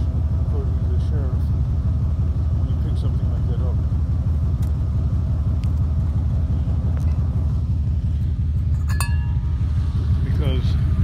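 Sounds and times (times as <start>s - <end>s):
vehicle engine and road noise: 0.0s - 11.0s
metallic clink: 8.6s - 9.6s.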